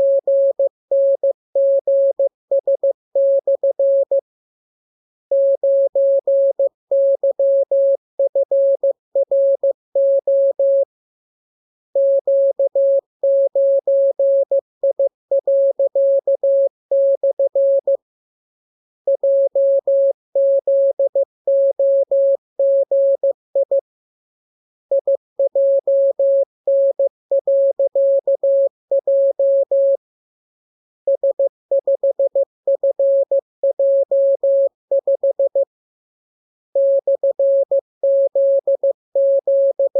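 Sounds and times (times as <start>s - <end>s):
morse code beeps: 36.8s - 39.9s.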